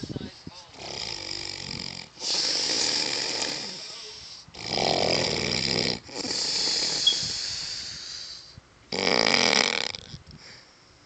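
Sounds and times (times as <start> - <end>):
rough snoring: 0.7 - 3.9, 4.5 - 10.2
hissing breath: 6.2 - 8.6.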